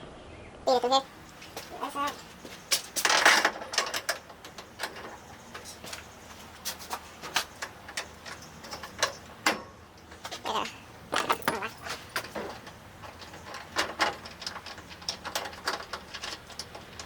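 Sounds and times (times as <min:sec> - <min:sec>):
scraping rustle: 0:01.1 - 0:17.0.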